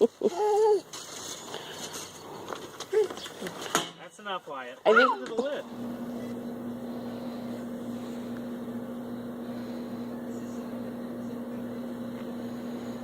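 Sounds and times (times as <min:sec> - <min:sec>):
steady machine hum: 0:05.6 - 0:13.0.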